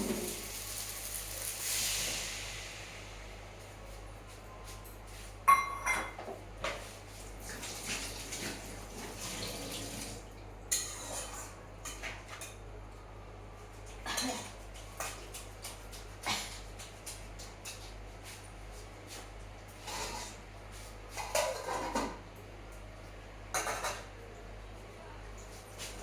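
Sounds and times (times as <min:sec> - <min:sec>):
metal pots clattering: 0:21.2 - 0:22.2.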